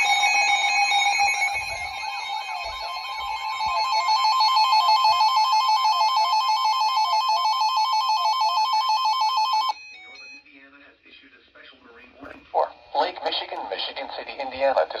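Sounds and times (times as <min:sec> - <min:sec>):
electronic alert alarm warbling: 0:00.0 - 0:10.2.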